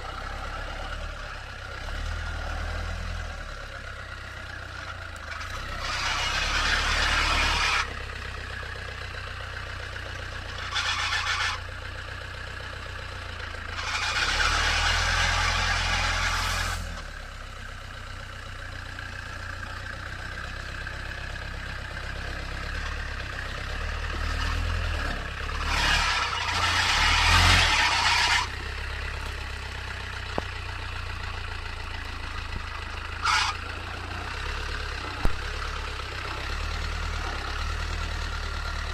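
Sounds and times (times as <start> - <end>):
off-road vehicle engine humming: 0.0 - 38.9.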